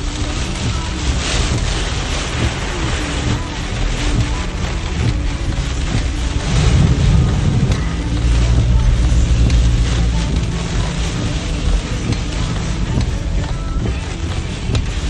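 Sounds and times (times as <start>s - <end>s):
heavy rain: 0.0s - 15.0s
wind buffeting microphone: 1.4s - 12.2s.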